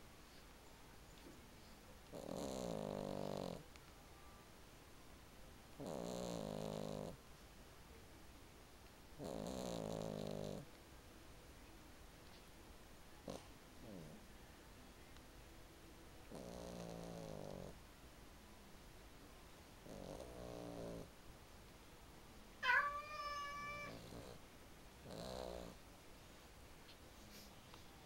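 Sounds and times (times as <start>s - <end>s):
cat snoring: 2.1s - 3.6s, 5.8s - 7.2s, 9.2s - 10.6s, 13.3s - 14.2s, 16.3s - 17.8s, 19.8s - 21.1s, 23.6s - 24.4s, 25.0s - 25.8s.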